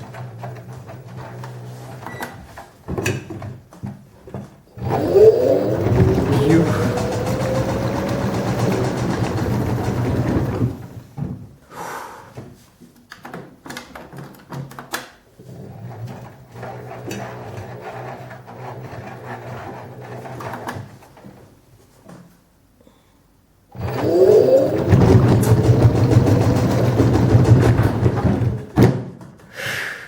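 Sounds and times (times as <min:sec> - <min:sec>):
washing machine motor whine: 0:04.8 - 0:11.1, 0:23.7 - 0:28.8.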